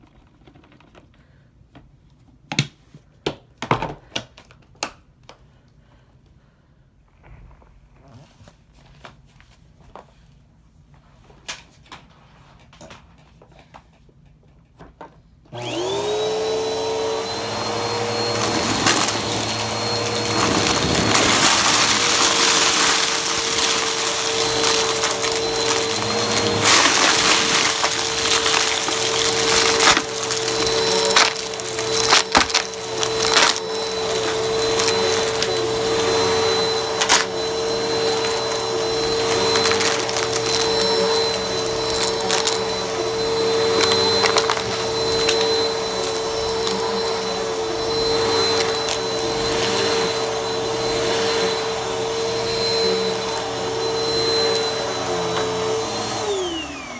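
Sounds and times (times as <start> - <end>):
vacuum cleaner running: 15.5 - 56.9.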